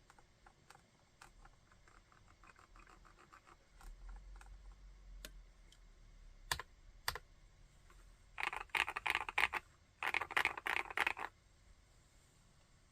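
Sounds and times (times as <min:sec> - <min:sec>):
mechanical keyboard typing: 0:00.0 - 0:04.8, 0:06.5 - 0:07.2, 0:08.4 - 0:11.3.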